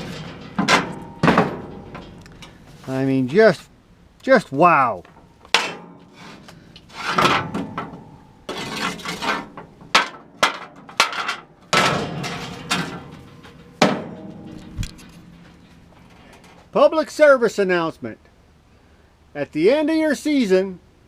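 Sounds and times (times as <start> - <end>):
knocks and scrapes on metal: 0.0 - 3.1, 5.0 - 16.7.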